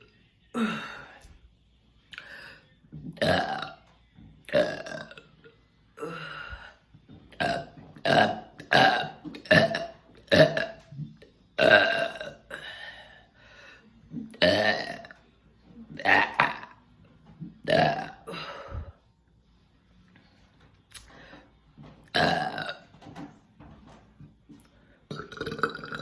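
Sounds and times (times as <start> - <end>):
person burping loudly: 0.5 - 1.2, 3.1 - 3.8, 4.4 - 5.4, 6.0 - 13.2, 14.2 - 15.2, 15.9 - 16.8, 17.5 - 19.0, 22.0 - 22.9, 25.1 - 26.0.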